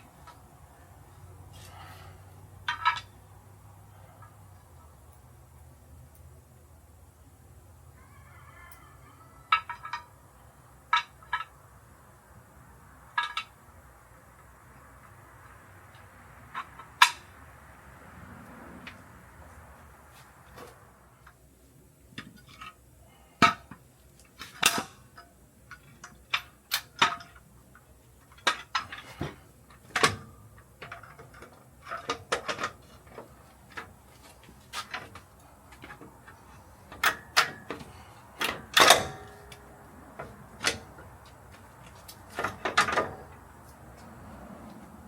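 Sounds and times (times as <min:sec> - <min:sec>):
metal tools clanking: 0:36.9 - 0:39.6.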